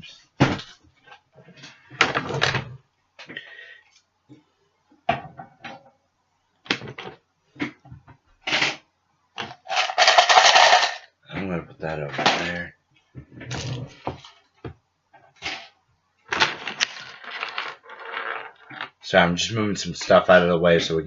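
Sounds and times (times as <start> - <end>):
objects knocking and clunking: 0.4 - 3.4, 5.0 - 6.0, 6.6 - 8.8, 13.2 - 15.7, 16.3 - 19.0.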